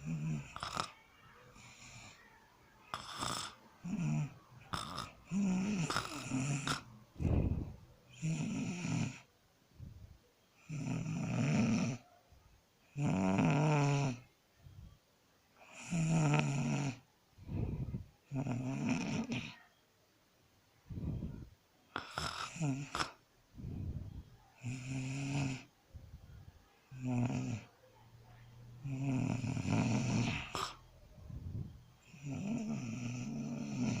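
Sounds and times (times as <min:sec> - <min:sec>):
person snoring: 0:00.0 - 0:01.0, 0:02.9 - 0:09.3, 0:10.6 - 0:12.0, 0:12.9 - 0:14.2, 0:15.6 - 0:19.5, 0:22.0 - 0:25.7, 0:26.9 - 0:27.7, 0:28.8 - 0:34.0
faint breathing: 0:00.0 - 0:10.5, 0:14.1 - 0:18.3, 0:20.8 - 0:27.0, 0:28.6 - 0:34.0.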